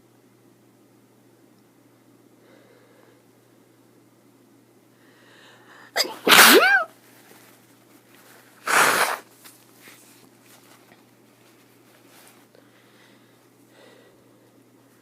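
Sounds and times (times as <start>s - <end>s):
person sneezing: 5.9s - 6.9s, 8.6s - 9.3s.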